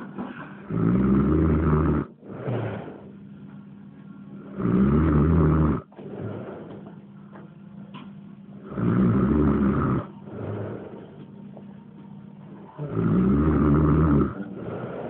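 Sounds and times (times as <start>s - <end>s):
loud snoring: 0.6s - 3.2s, 4.4s - 6.8s, 8.6s - 11.1s, 12.7s - 15.0s
soft breath out: 2.2s - 3.3s, 10.2s - 11.3s, 14.4s - 15.0s.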